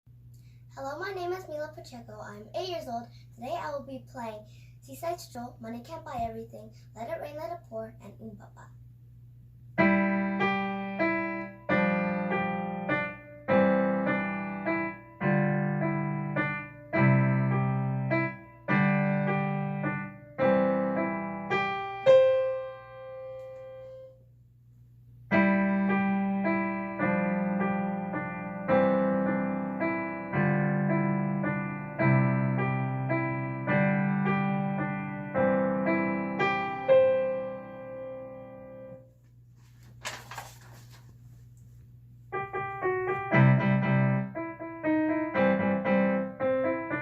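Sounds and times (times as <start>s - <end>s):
slow piano chords: 9.8s - 24.3s, 25.2s - 39.1s, 42.3s - 47.0s.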